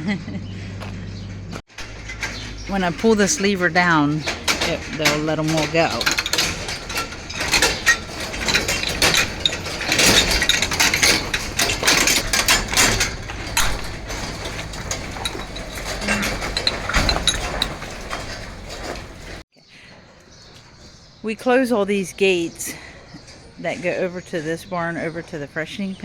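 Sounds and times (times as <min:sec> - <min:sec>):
metal bars clanking and rattling: 0:01.7 - 0:19.4.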